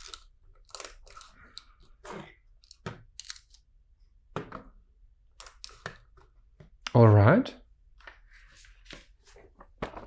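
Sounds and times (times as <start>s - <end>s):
plastic pieces clicking: 2.6s - 3.6s.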